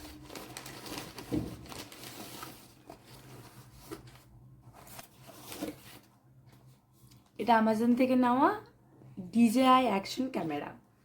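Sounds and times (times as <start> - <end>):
package rustling: 0.0 - 6.1.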